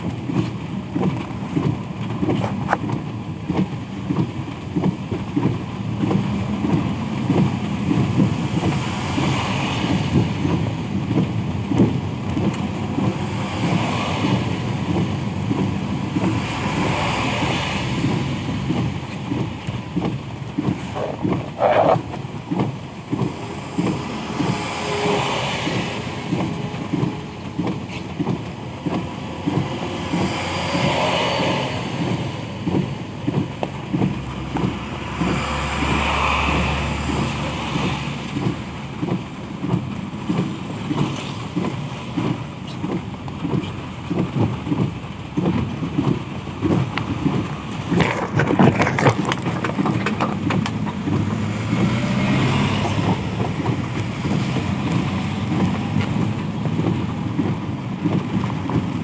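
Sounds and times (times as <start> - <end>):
heavy engine rumble: 0.0 - 59.0
tyres hissing on wet road: 0.0 - 59.0
fast low rattle: 46.7 - 51.9.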